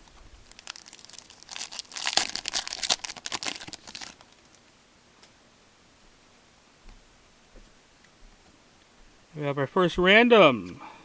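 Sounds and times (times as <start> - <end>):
foil wrapper crinkling and tearing: 0.0 - 4.6.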